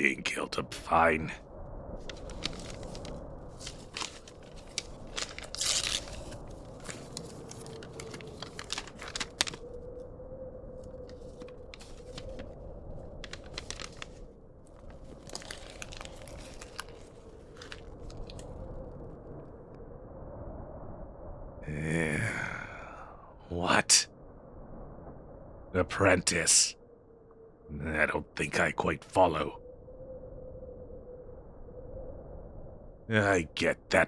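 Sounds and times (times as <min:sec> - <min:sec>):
storm ambience: 0:00.0 - 0:34.0
paper crinkling and tearing: 0:02.1 - 0:09.6, 0:11.2 - 0:12.5, 0:13.2 - 0:14.2, 0:14.9 - 0:18.4.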